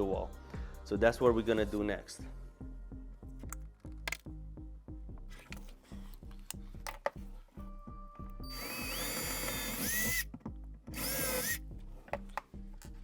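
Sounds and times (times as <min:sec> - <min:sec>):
background music with steady beat: 0:00.0 - 0:13.0
power drill driving into wood: 0:08.5 - 0:10.3, 0:10.9 - 0:11.6.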